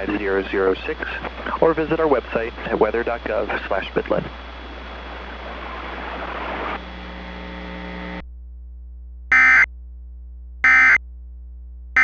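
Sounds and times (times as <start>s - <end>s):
buzzy digital data bursts: 0.0s - 8.2s
radio hiss: 0.0s - 8.2s
low hum: 0.0s - 12.0s.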